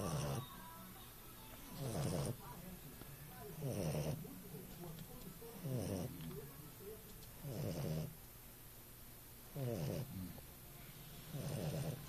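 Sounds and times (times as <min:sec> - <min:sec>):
puppy snoring: 0:00.0 - 0:00.7, 0:01.7 - 0:02.7, 0:03.5 - 0:04.4, 0:05.6 - 0:06.4, 0:07.4 - 0:08.2, 0:09.5 - 0:10.5, 0:11.2 - 0:12.0.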